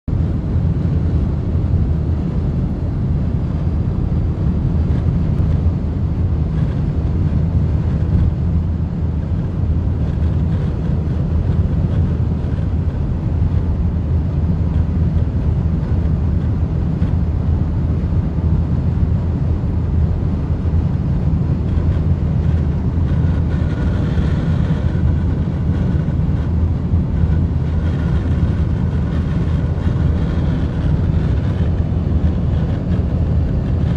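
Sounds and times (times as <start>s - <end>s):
wind noise inside car: 0.0s - 33.9s.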